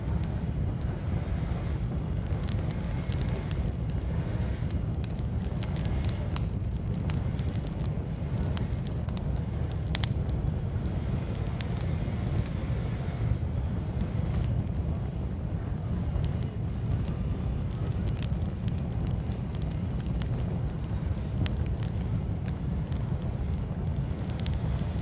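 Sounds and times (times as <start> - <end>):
wind rumble on microphone: 0.0 - 25.0
wood fire crackling and popping: 0.0 - 25.0.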